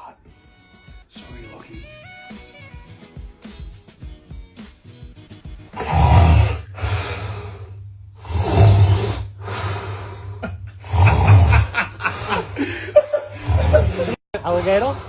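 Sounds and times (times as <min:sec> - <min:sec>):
man snoring loudly: 0:05.8 - 0:15.0.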